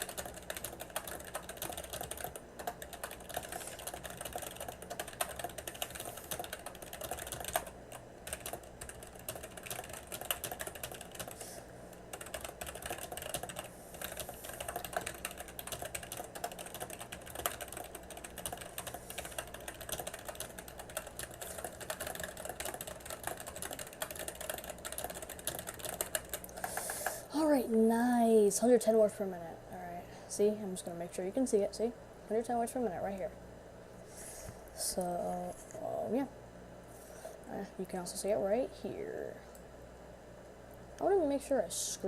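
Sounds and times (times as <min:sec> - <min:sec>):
fast typing on keyboard: 0:00.0 - 0:11.5, 0:12.1 - 0:27.1.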